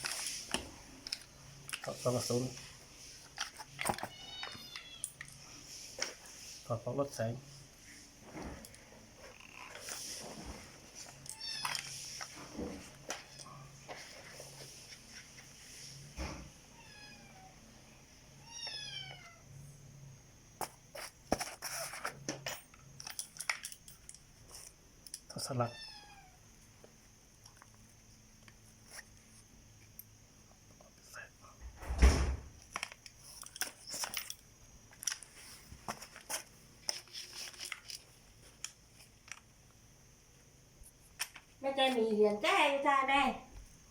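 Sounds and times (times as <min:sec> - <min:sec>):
cat meowing: 0:18.4 - 0:19.4, 0:25.6 - 0:26.4
rifle parts clicking and clattering: 0:21.3 - 0:25.3, 0:32.6 - 0:39.5
thump: 0:31.7 - 0:32.5.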